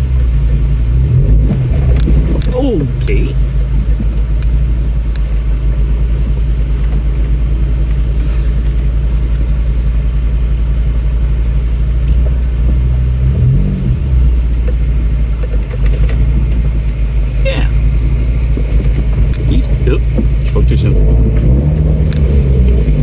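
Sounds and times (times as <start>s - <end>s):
car engine running low: 0.0s - 23.0s.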